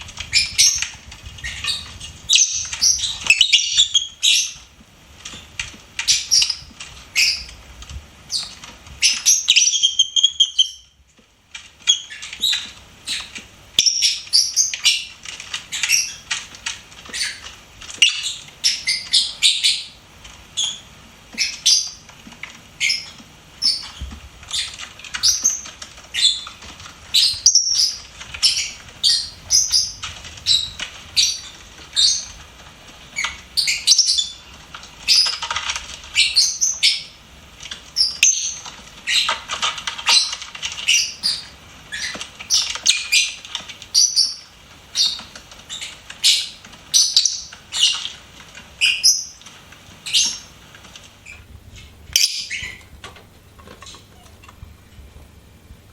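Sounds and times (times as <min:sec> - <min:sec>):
bird chirping: 0:00.2 - 0:04.7, 0:05.3 - 0:07.6, 0:08.3 - 0:11.0, 0:11.8 - 0:16.5, 0:17.1 - 0:20.0, 0:20.6 - 0:22.0, 0:22.8 - 0:32.4, 0:33.2 - 0:35.5, 0:36.1 - 0:37.2, 0:40.0 - 0:48.1, 0:50.0 - 0:50.6, 0:51.2 - 0:52.9.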